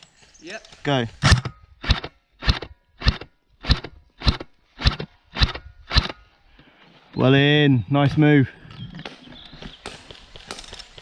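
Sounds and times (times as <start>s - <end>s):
footsteps crunching on forest floor: 0.0s - 1.2s.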